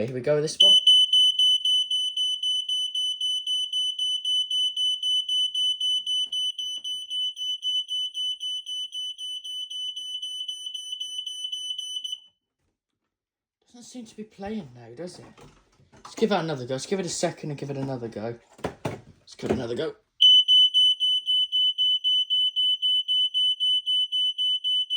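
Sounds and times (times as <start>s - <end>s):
smoke alarm pulsing tone: 0.6s - 12.3s, 20.2s - 24.9s.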